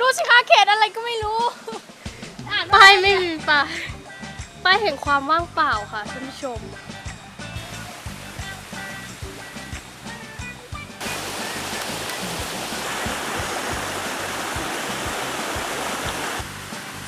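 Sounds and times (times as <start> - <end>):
background music with steady beat: 0.0 - 17.0
stream water flowing: 6.8 - 17.0.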